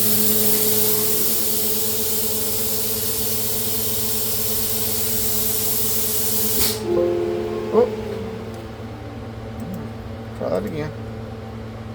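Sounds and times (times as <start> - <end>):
plasma cutter torch hissing: 0.0 - 6.8
fan humming: 6.5 - 11.7.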